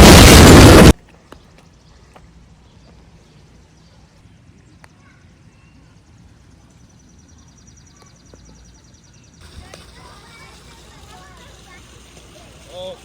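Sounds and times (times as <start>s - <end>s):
low rumble: 0.0s - 0.9s
animal's rapid pulsing trill: 9.4s - 13.0s.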